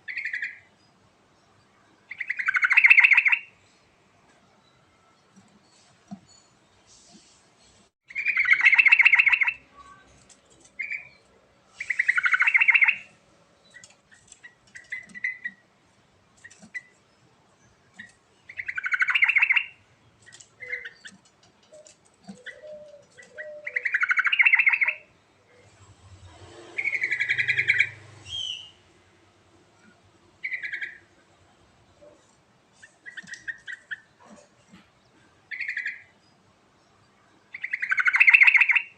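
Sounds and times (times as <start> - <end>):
bird singing fast repeated notes: 2.1 - 3.5, 8.1 - 9.6, 11.8 - 15.7, 17.9 - 25.1, 26.8 - 28.9, 30.4 - 31.1, 37.5 - 38.9.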